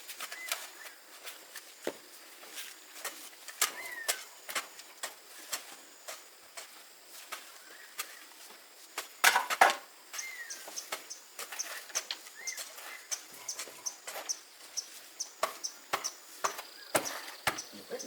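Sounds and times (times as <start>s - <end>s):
small bird chirping: 0.3s - 1.0s, 3.7s - 4.4s, 10.1s - 18.0s.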